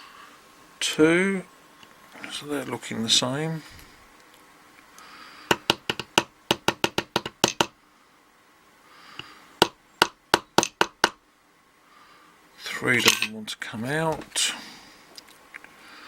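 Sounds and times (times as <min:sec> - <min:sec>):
rapid sharp taps on lock: 0:05.5 - 0:07.8, 0:09.6 - 0:11.2.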